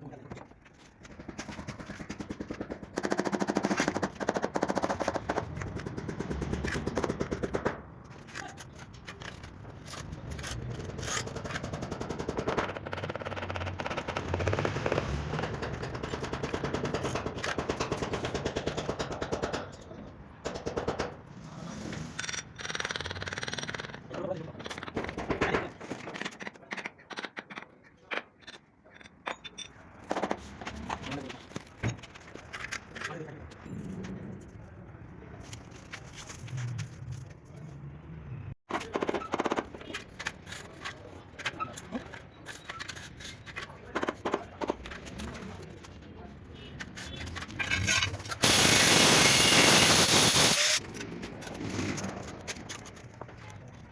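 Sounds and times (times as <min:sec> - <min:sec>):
power tool rattling: 0:48.4 - 0:50.8.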